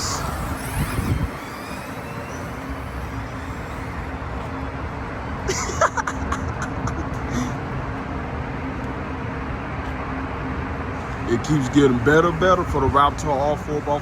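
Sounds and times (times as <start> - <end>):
faint steady hum: 0.0 - 9.9
vehicle running noise: 0.0 - 14.0.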